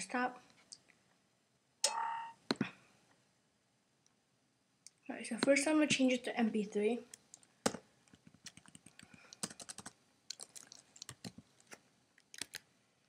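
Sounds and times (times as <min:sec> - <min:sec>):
computer keyboard typing: 0:07.3 - 0:11.7, 0:12.3 - 0:12.6.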